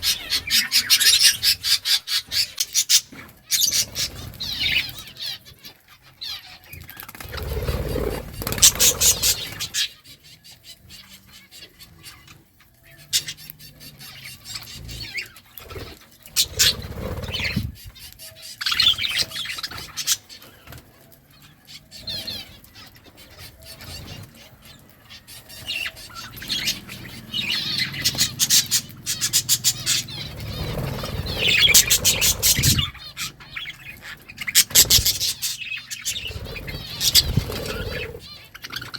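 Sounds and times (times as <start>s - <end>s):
budgerigars chirping and chattering: 0.0s - 38.9s.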